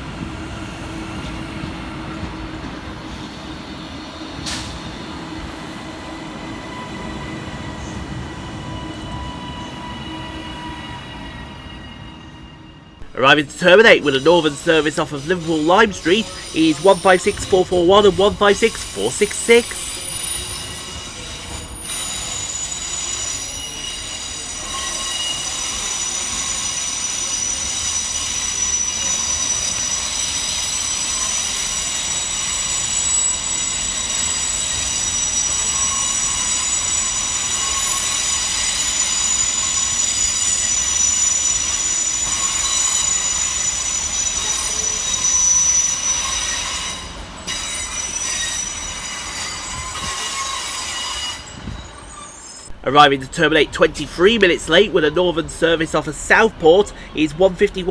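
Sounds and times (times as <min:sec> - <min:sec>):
train wheels squealing: 0:00.0 - 0:13.0, 0:19.8 - 0:52.8.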